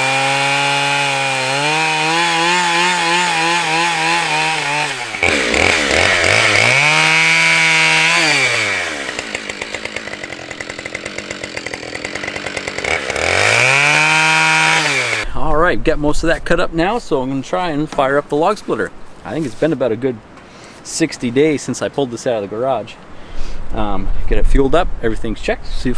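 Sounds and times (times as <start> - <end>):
chainsaw cutting log: 0.0 - 15.3.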